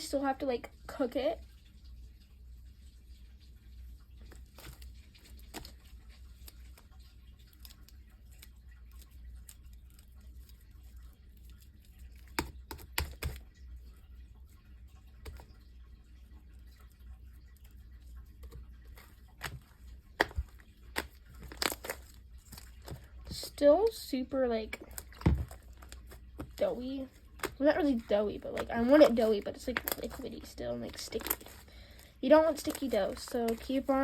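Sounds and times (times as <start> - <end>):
slime squished by hand: 18.4 - 23.5, 24.7 - 34.0.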